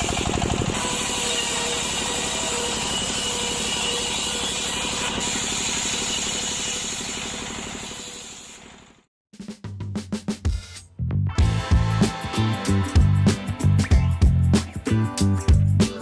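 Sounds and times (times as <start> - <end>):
woodworking machine running: 0.0 - 8.8.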